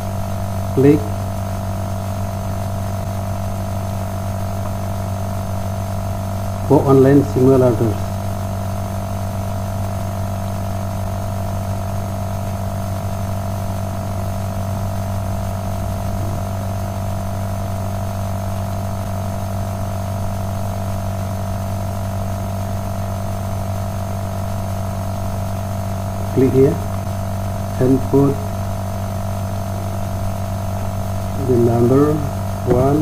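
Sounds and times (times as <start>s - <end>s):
steady electrical hum: 0.0s - 33.0s.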